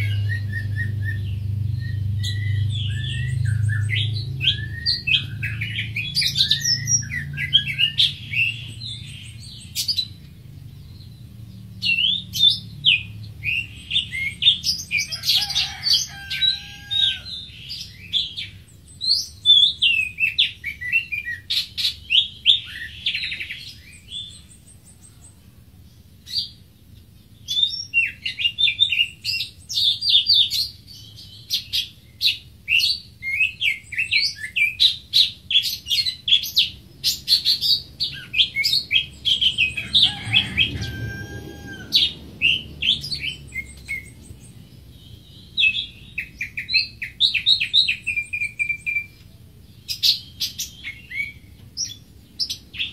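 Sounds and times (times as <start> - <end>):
bird whistles and chirps: 0.0 - 10.2, 17.7 - 25.2, 27.4 - 44.3, 45.3 - 49.2, 49.9 - 52.9.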